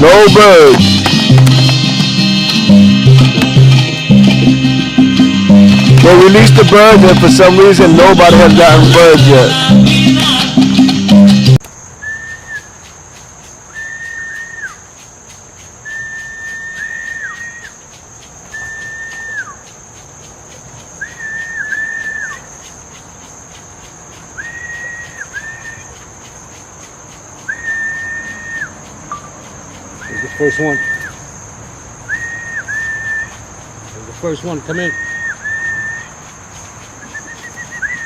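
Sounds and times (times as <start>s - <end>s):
high insect trill: 0.0s - 38.0s
whistled note: 12.0s - 12.8s, 13.7s - 14.8s, 15.8s - 17.8s, 18.5s - 19.6s, 21.0s - 22.5s, 24.4s - 26.0s, 27.5s - 28.8s, 30.0s - 31.2s, 32.1s - 33.4s, 34.7s - 36.1s, 37.0s - 38.0s.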